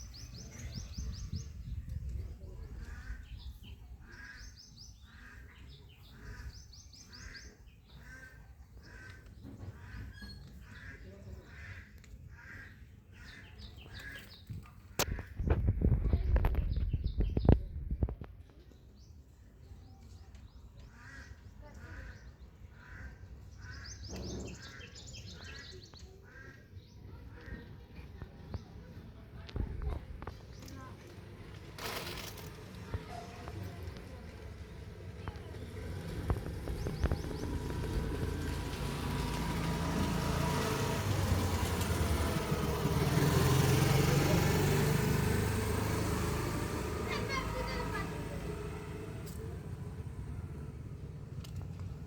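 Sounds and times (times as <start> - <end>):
birds calling: 0.0 - 18.1, 18.7 - 29.0, 29.6 - 52.0
vehicle engine humming: 28.2 - 52.0.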